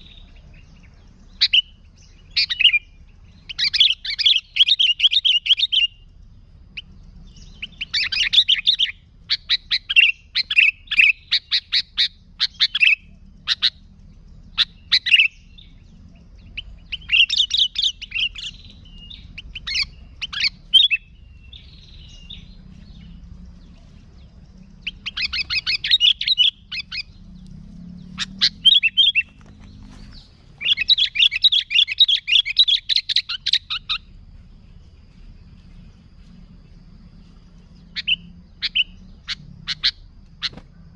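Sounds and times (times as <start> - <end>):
bird chattering song: 0.0 - 40.9.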